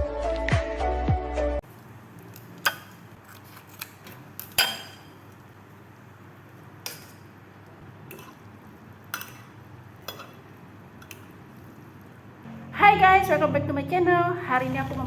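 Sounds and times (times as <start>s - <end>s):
cutlery clinking against dishes: 2.6s - 3.0s, 3.8s - 5.2s, 6.8s - 7.3s, 8.1s - 8.5s, 9.1s - 11.3s.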